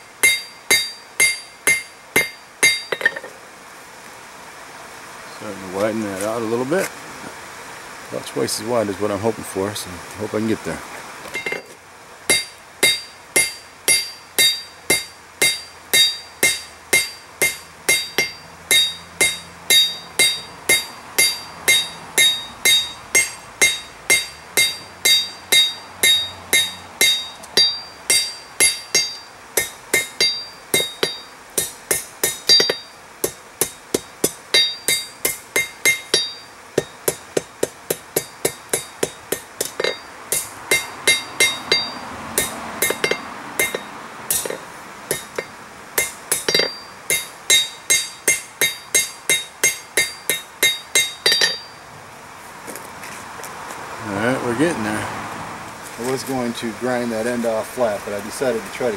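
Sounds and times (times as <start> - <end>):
anvil ringing: 0.2 - 3.3, 11.4 - 11.7, 12.3 - 51.8
hammer striking hot steel: 0.2 - 3.3, 11.3 - 51.8.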